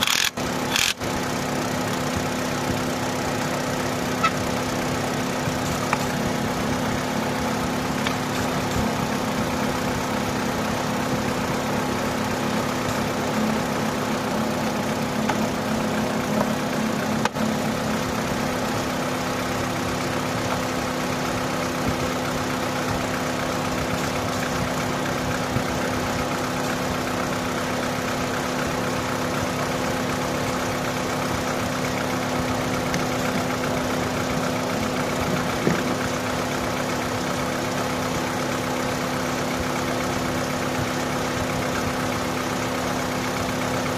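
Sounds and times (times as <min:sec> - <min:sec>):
car engine idling: 0:00.0 - 0:43.9.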